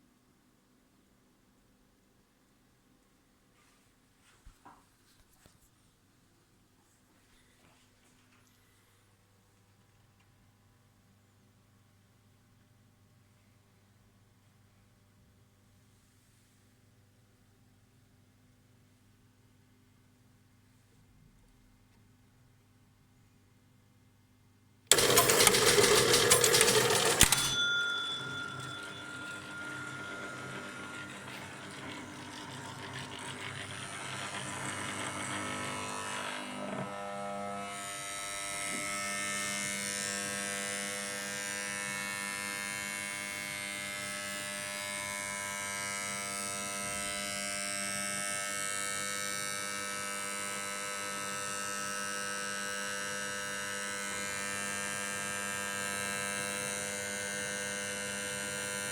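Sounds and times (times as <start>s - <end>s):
pinball machine electrical buzz: 24.9s - 58.9s.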